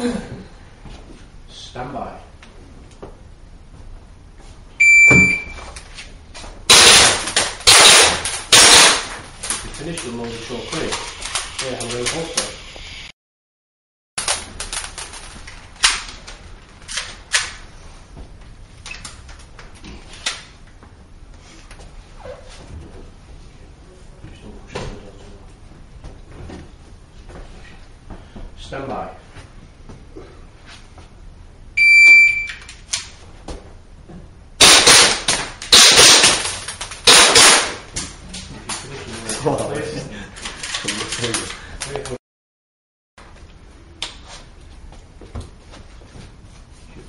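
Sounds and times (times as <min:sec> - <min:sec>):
shot timer beep: 0:04.8 - 0:05.6, 0:31.8 - 0:32.7
pistol shots indoors: 0:06.7 - 0:09.1, 0:34.6 - 0:37.8.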